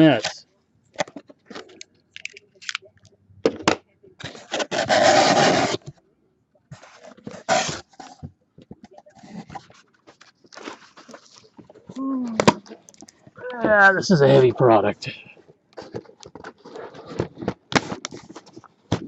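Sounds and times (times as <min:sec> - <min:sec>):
cardboard scrapes and clicks: 0:04.2 - 0:06.0, 0:06.8 - 0:08.2
cardboard ripping: 0:04.3 - 0:05.9, 0:06.8 - 0:08.1.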